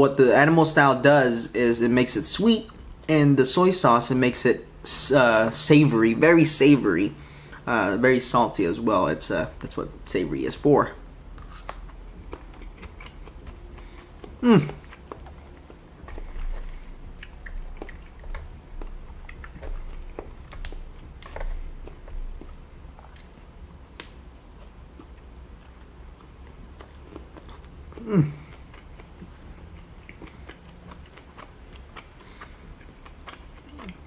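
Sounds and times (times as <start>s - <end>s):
chewing and biting food: 11.3s - 34.0s
wet mouth smacks: 17.2s - 21.6s.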